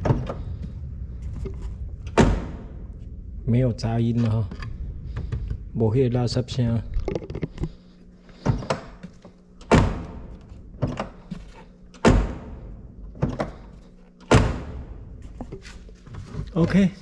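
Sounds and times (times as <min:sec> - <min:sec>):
solid thunks on car body: 0:02.1 - 0:02.8, 0:09.7 - 0:11.0, 0:12.0 - 0:13.6, 0:14.3 - 0:15.0.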